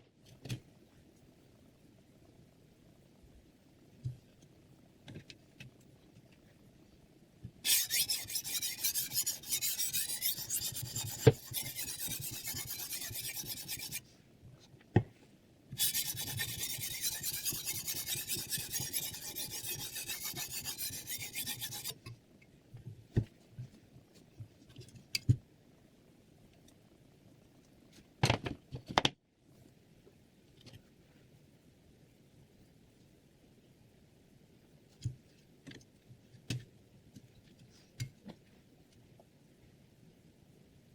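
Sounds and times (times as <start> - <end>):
knife scraping on whetstone: 7.7 - 14.0, 15.8 - 22.0.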